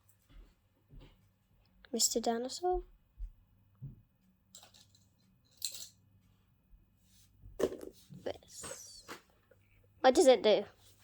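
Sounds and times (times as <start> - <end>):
plastic toys clicking and rustling: 4.5 - 6.0.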